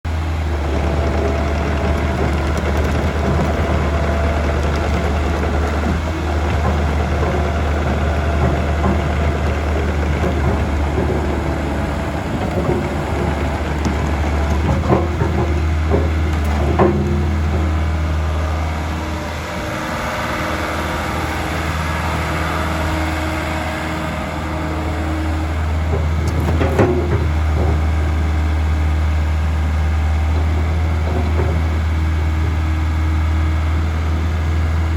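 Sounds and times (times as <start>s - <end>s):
excavator diesel engine running: 0.0s - 34.9s
short knocks: 0.8s - 18.2s, 25.1s - 28.5s.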